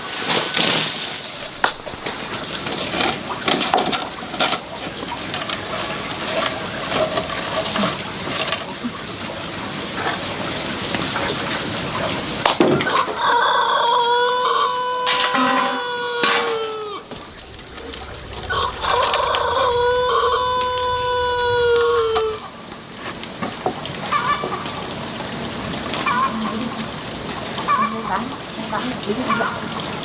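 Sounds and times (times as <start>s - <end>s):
rooster crowing: 12.9s - 22.6s.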